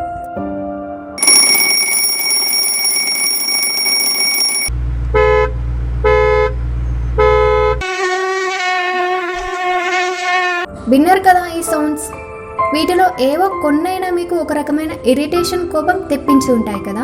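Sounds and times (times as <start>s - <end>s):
vehicle horn tooting: 5.2s - 6.6s, 7.2s - 8.2s
mosquito buzzing: 7.8s - 10.7s.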